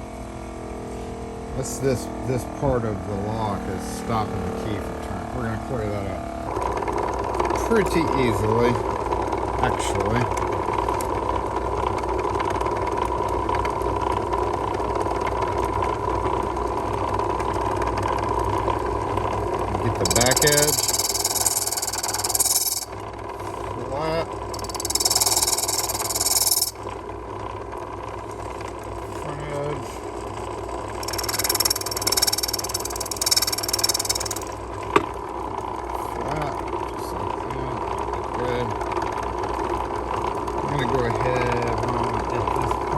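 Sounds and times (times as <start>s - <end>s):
low machine hum: 0.0s - 42.9s
metal key rasping on abrasive: 20.0s - 23.7s, 24.5s - 26.8s, 30.9s - 34.6s.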